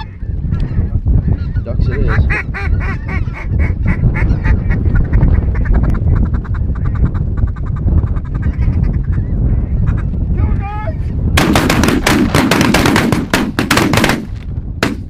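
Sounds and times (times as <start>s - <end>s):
ducks quacking: 0.0s - 10.2s
steady low rumble: 0.0s - 15.0s.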